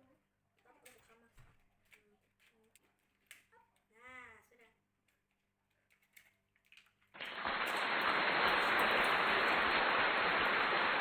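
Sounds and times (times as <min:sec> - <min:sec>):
steady hiss: 0:07.2 - 0:11.0.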